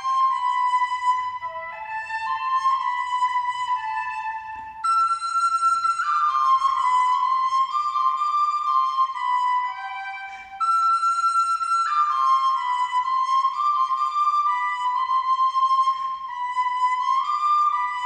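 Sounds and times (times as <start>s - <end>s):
solo flute-like melody: 0.0s - 18.0s.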